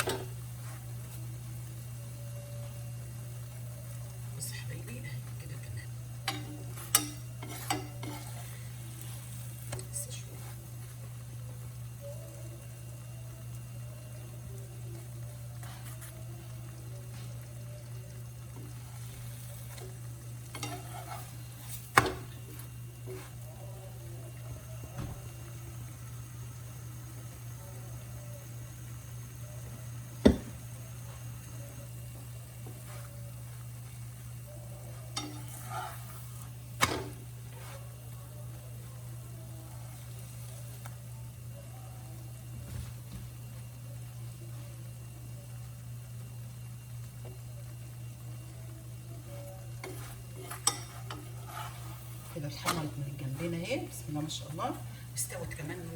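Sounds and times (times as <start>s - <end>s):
food frying in a skillet: 0.0s - 55.9s
steady low hum: 0.0s - 55.9s
utensil clinking against a pan: 6.2s - 8.5s, 20.4s - 22.3s, 35.0s - 36.2s, 49.8s - 53.4s.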